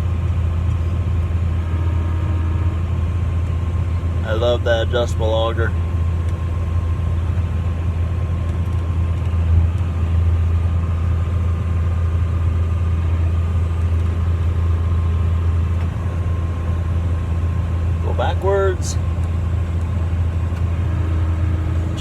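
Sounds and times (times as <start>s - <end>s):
tractor diesel engine droning: 0.0s - 22.0s
grain auger unloading corn: 20.8s - 22.0s.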